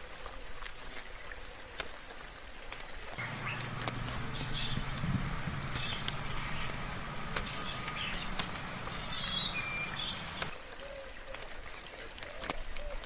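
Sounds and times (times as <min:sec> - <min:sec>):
raindrops dripping: 0:01.8 - 0:10.5
birds chirping: 0:03.2 - 0:10.5
low steady rumble: 0:03.2 - 0:10.5.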